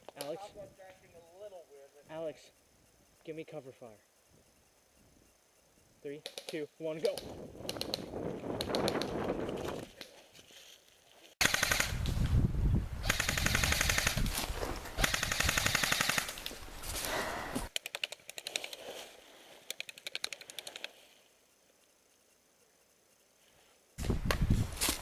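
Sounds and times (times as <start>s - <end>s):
airsoft guns firing bursts: 11.4s - 12.0s, 13.0s - 14.3s, 15.0s - 16.4s.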